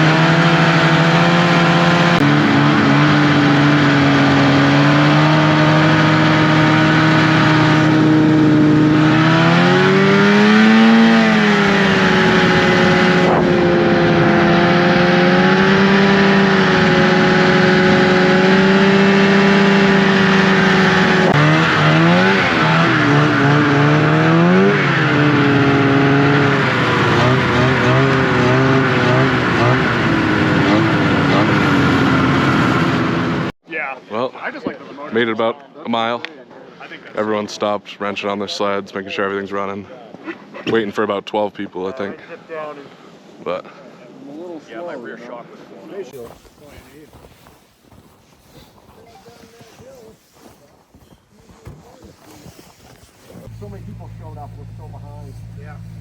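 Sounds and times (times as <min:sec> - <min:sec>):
snowmobile engine revving: 0:00.0 - 0:33.6, 0:46.2 - 0:56.0.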